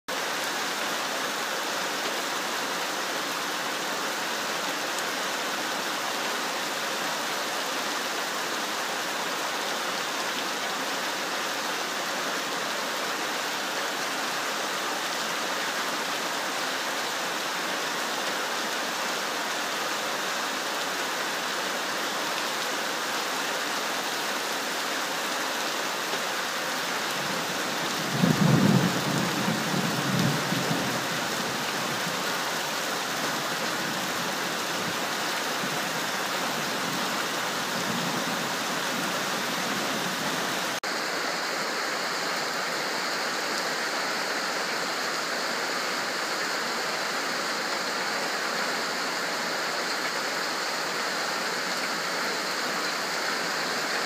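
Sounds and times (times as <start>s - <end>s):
steady rain falling: 0.1s - 54.0s
low rumble of thunder: 28.0s - 30.9s.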